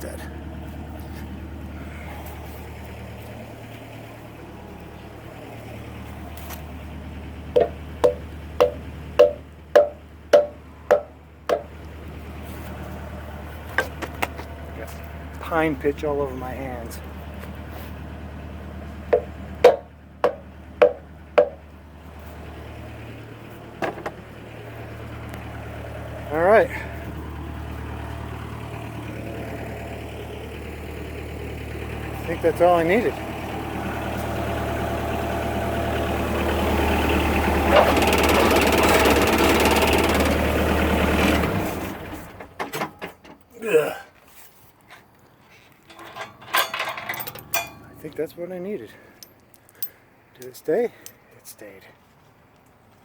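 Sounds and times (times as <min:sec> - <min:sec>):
engine idling: 0:00.0 - 0:44.0, 0:44.9 - 0:53.0
sharp knocks: 0:07.5 - 0:11.7, 0:19.1 - 0:21.6.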